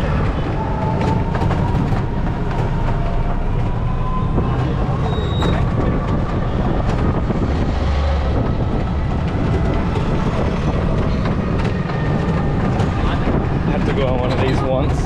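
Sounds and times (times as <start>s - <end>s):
vehicle engine and road rumble: 0.0s - 15.0s.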